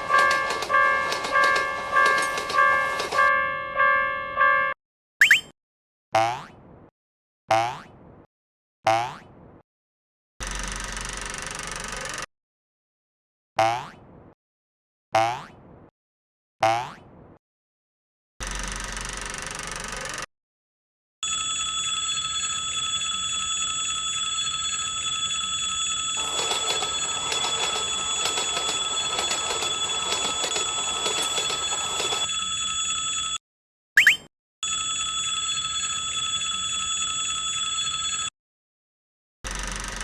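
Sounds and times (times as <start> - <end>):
railroad crossing bell ringing: 0.0 - 4.5, 21.2 - 33.4, 34.6 - 38.3
rising boing sound effect: 5.2 - 5.5, 34.0 - 34.3.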